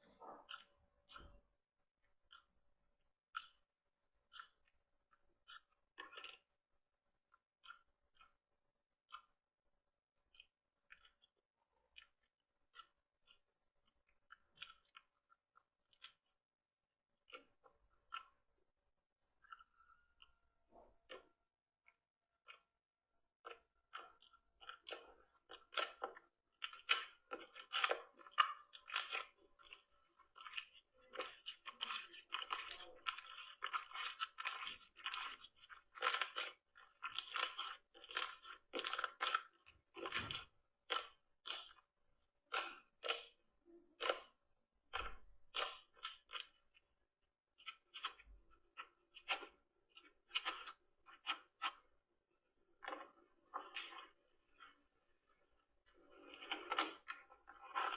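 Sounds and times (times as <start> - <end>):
slime crackling and popping: 23.4 - 41.7, 42.5 - 44.3, 44.9 - 46.6.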